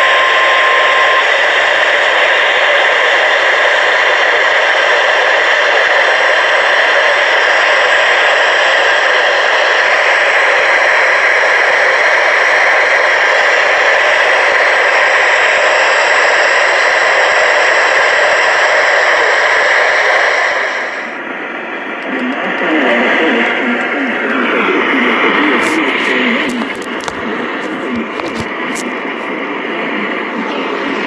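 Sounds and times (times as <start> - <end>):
radio static hiss: 22.0 - 29.3.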